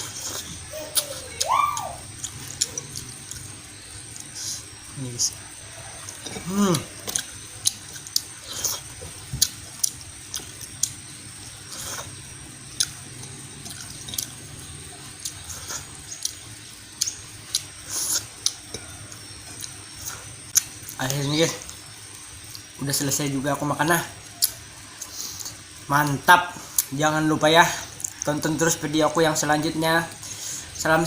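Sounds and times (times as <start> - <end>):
wet chewing and lip smacks: 2.1 - 4.4, 7.0 - 11.0, 12.7 - 14.4, 15.2 - 21.0.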